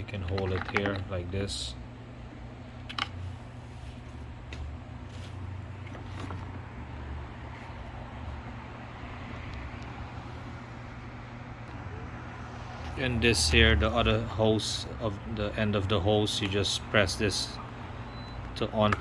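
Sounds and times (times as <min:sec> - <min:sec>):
low background hum: 0:00.0 - 0:19.0
plastic parts clicking and knocking: 0:00.1 - 0:01.2.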